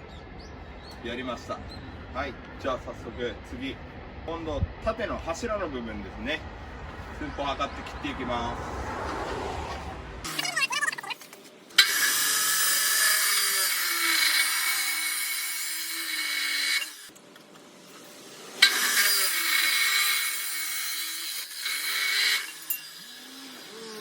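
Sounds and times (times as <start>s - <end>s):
cut-off saw grinding steel: 10.2s - 17.1s, 17.9s - 24.0s.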